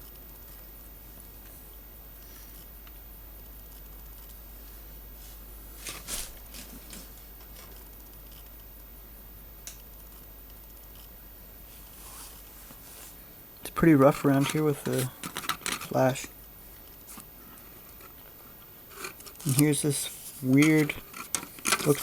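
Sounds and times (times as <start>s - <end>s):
steady low hiss: 0.0s - 22.0s
plastic parts clicking: 14.1s - 16.0s, 18.9s - 19.9s, 20.5s - 22.0s.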